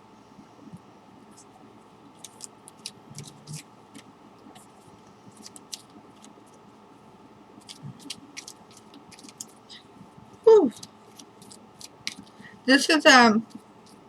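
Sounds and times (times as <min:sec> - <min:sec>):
cards clicking and snapping: 0:02.2 - 0:04.7, 0:05.3 - 0:06.4, 0:07.6 - 0:09.6, 0:10.7 - 0:12.3.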